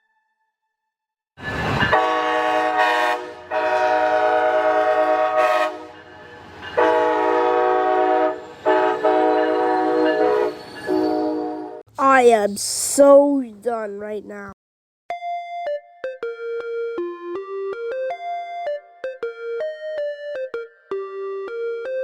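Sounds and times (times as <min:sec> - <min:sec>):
train air horn blasts: 0:01.9 - 0:11.8.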